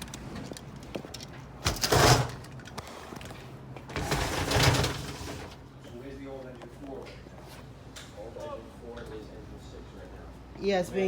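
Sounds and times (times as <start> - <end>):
compartment doors sliding: 3.9 - 5.6.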